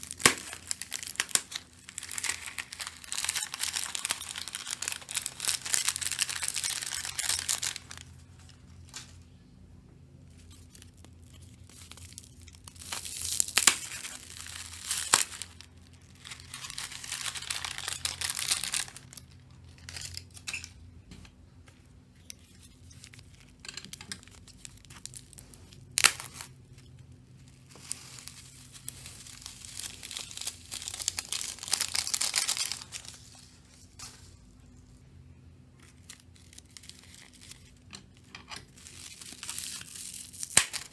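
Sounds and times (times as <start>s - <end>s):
slime crackling and tearing: 0.0s - 8.2s, 10.4s - 20.4s, 22.8s - 26.8s, 27.4s - 33.4s, 35.8s - 37.8s, 38.7s - 40.9s.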